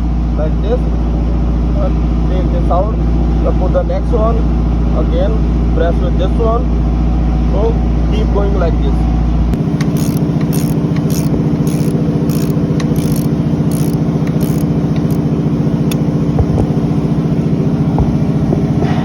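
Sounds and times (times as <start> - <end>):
engine machinery droning: 6.7 - 19.0
tool scraping strokes: 9.8 - 15.2.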